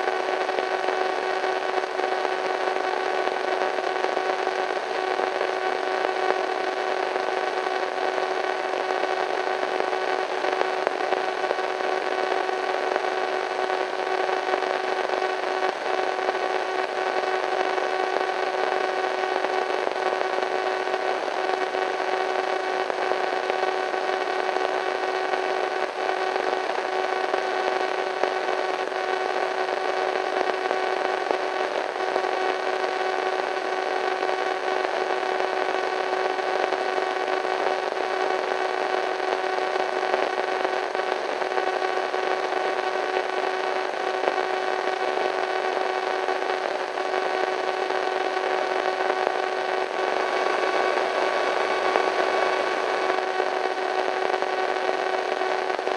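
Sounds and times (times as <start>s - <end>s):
radio static hiss: 0.0s - 55.9s
multi-tone hum: 39.8s - 55.9s.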